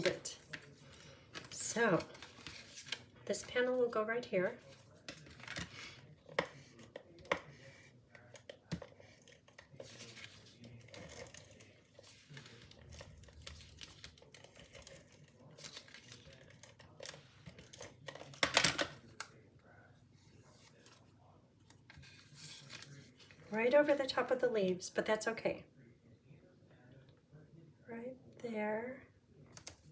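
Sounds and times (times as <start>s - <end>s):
paper card rustling: 0.0s - 3.6s, 4.4s - 19.3s, 20.3s - 23.7s.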